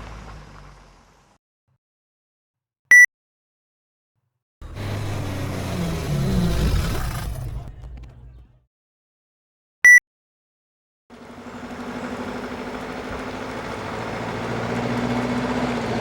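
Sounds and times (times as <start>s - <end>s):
car engine running: 4.6s - 8.6s, 11.1s - 16.0s.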